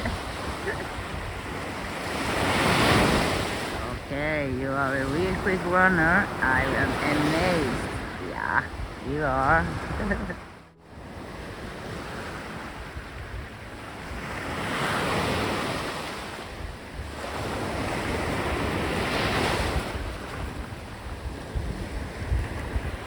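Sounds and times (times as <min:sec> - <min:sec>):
sea waves breaking on beach: 0:00.0 - 0:23.0
wind buffeting microphone: 0:00.0 - 0:23.0.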